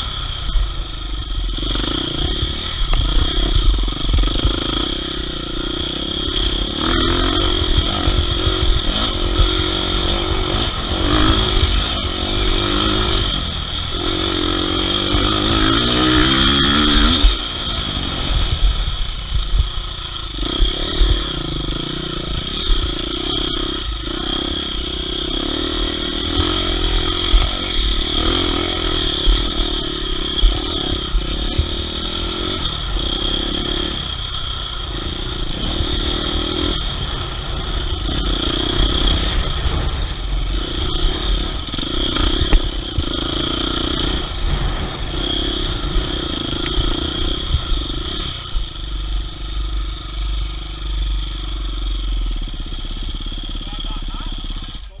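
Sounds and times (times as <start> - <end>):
motorcycle engine revving: 0.0 - 55.0
sharp knocks from rough ground: 42.4 - 43.1.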